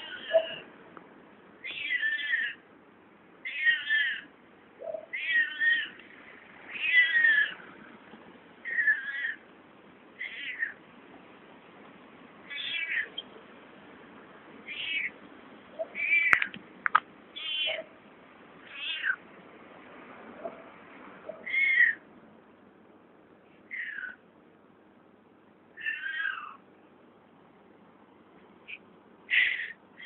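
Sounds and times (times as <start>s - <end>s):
cat meowing: 0.0s - 0.7s, 1.6s - 2.6s, 3.4s - 4.3s, 5.0s - 6.0s, 6.7s - 7.7s, 8.6s - 9.4s, 10.2s - 10.8s, 12.4s - 13.2s, 14.6s - 15.2s, 15.8s - 16.5s, 17.4s - 17.9s, 18.7s - 19.2s, 21.3s - 22.0s, 25.8s - 26.6s.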